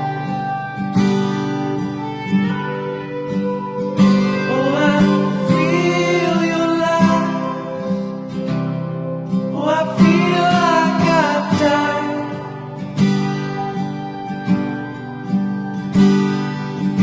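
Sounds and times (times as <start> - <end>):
strummed acoustic guitar: 0.0 - 17.0
person singing: 4.0 - 13.8.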